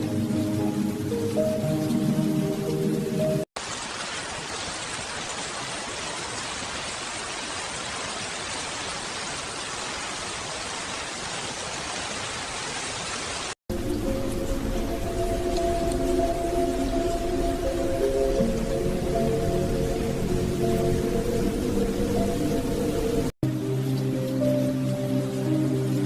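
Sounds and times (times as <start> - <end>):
soft music: 0.0 - 3.5, 13.7 - 26.0
steady rain hiss: 0.0 - 26.0.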